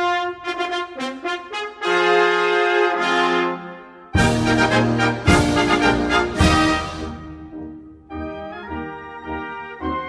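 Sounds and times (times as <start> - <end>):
orchestral brass chords: 0.0 - 10.0.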